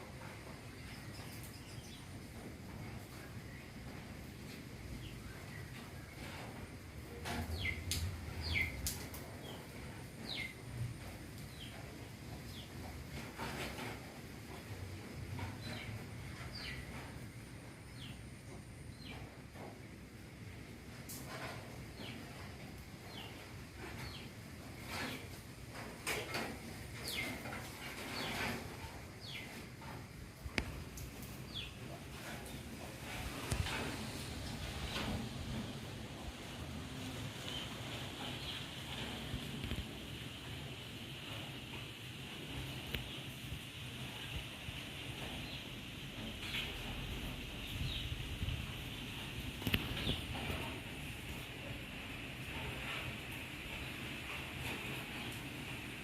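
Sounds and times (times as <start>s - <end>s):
rain falling: 2.6s - 56.0s
rain hiss: 30.6s - 56.0s.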